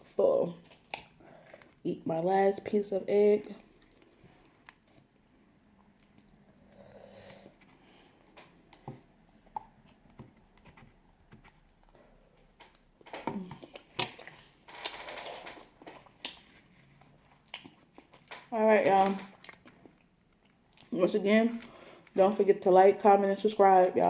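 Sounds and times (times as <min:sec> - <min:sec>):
chewing and mouth clicks: 0:00.6 - 0:01.8, 0:03.7 - 0:06.4, 0:15.8 - 0:18.5, 0:19.2 - 0:20.9.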